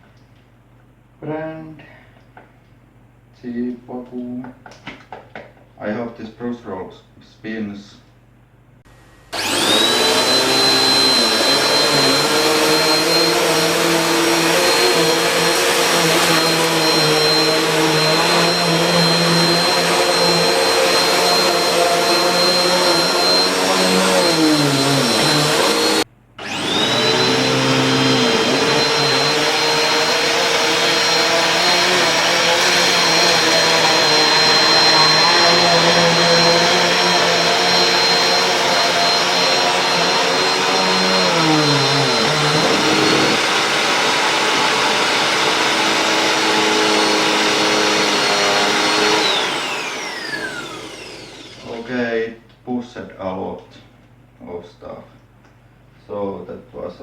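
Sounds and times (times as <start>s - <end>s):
vacuum cleaner motor whine: 8.9s - 52.0s
suction rush on rug: 25.0s - 51.4s.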